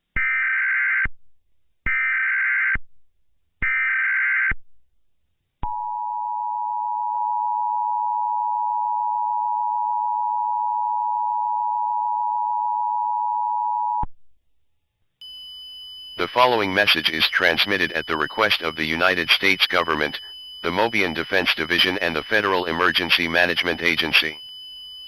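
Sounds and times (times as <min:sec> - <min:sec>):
two-tone alarm tone: 0:05.7 - 0:14.0, 0:15.2 - 0:25.0
digital data tone bursts: 0:15.2 - 0:25.0.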